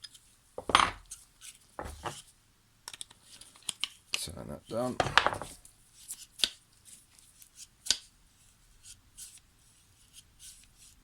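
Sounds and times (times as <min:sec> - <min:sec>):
handling rustle: 0:00.6 - 0:02.2.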